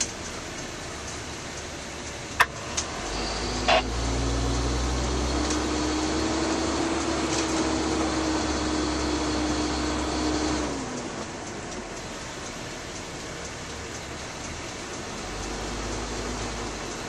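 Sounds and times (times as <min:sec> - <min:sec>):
motor running: 0:02.4 - 0:04.2.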